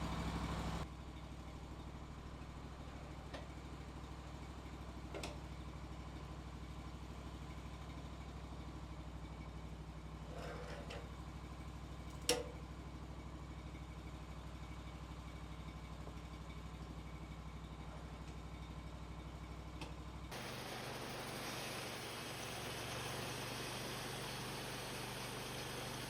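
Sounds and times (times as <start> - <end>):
engine idling: 12.9 - 26.0.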